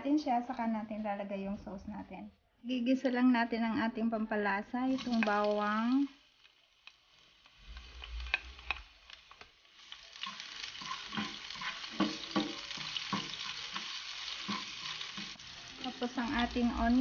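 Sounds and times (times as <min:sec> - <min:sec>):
garlic sizzling in hot oil: 0:04.4 - 0:17.0
utensil scraping against pan: 0:07.6 - 0:09.4, 0:10.2 - 0:16.5.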